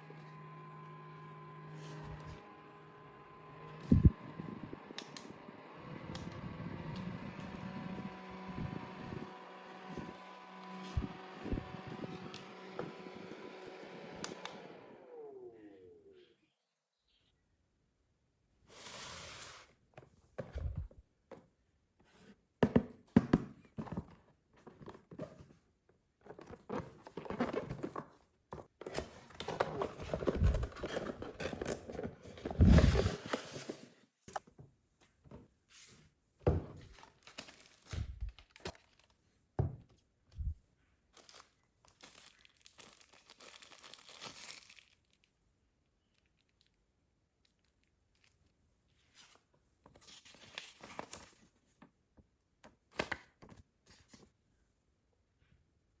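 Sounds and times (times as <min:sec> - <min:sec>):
packaging tearing and crumpling: 0:37.1 - 0:39.2, 0:41.2 - 0:45.3.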